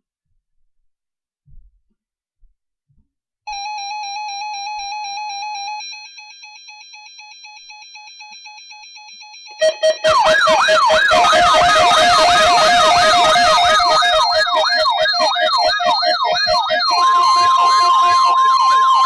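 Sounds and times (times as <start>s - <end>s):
buzzy warbling alert beep: 9.6s - 19.0s
siren-like rising tone: 9.6s - 19.0s.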